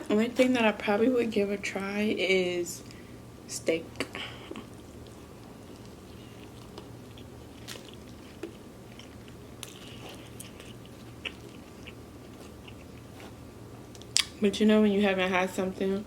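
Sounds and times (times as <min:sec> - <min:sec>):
person chewing food: 0:04.4 - 0:14.3.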